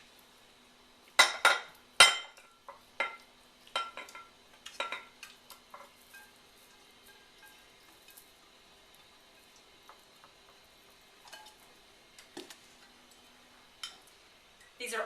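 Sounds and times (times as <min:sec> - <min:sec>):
spoon clinking against pot: 0:11.2 - 0:11.6.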